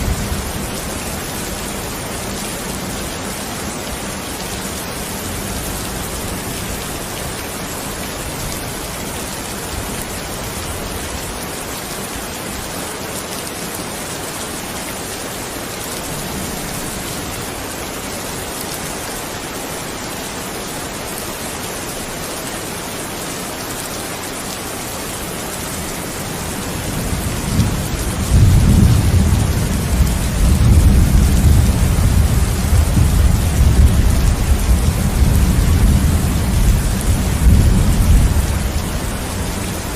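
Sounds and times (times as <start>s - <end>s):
steady rain falling: 0.0s - 39.9s
low rumble of thunder: 26.4s - 39.9s.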